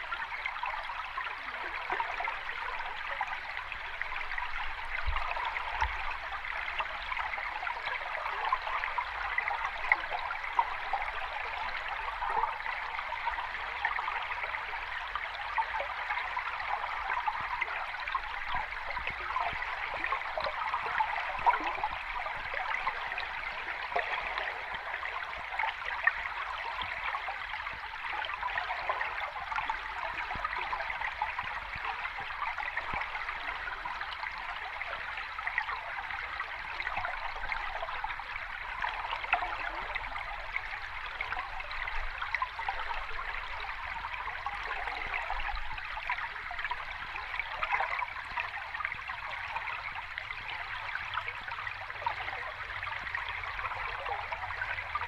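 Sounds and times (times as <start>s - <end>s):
stream running over rocks: 0.0s - 55.0s.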